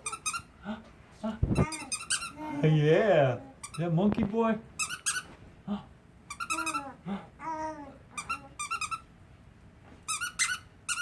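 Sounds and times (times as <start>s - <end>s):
squeaky toy squeaking: 0.0s - 0.5s, 1.6s - 2.4s, 4.8s - 5.3s, 6.3s - 6.9s, 8.2s - 9.1s, 10.1s - 11.0s
small child babbling: 1.5s - 2.8s, 6.5s - 8.8s.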